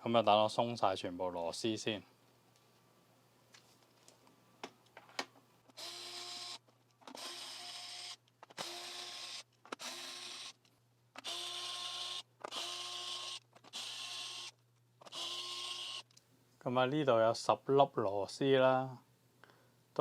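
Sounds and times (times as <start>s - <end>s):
electric screwdriver whirring: 5.7s - 10.6s, 11.2s - 16.1s.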